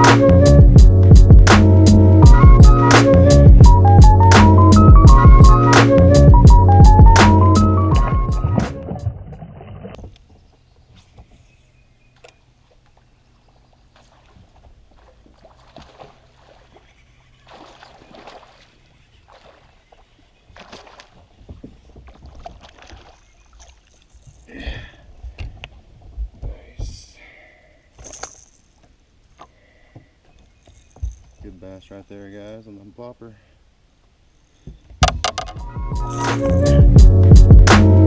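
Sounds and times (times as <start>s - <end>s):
background music: 0.0s - 9.2s, 35.0s - 38.0s
handling noises on boat: 8.0s - 16.9s, 20.4s - 27.0s, 28.0s - 31.8s, 34.5s - 36.3s
faint water splashes: 8.7s - 32.0s.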